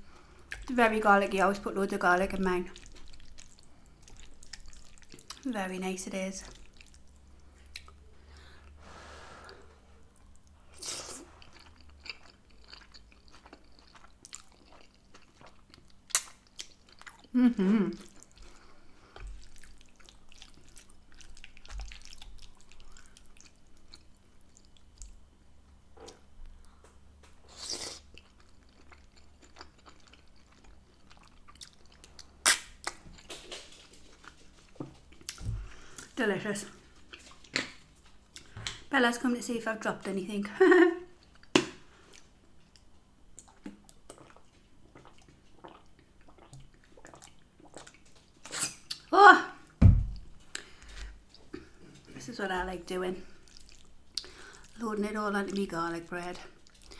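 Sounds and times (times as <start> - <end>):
chewing food: 2.6 - 5.5, 6.4 - 8.8, 9.5 - 17.4, 18.0 - 38.9, 41.1 - 49.1, 53.2 - 54.8, 56.4 - 56.9.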